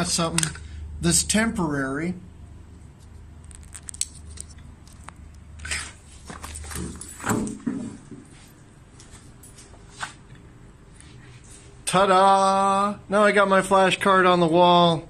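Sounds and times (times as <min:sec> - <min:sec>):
binder clip clicks: 0:00.3 - 0:00.6
paper scuffs and rustles: 0:05.6 - 0:08.5.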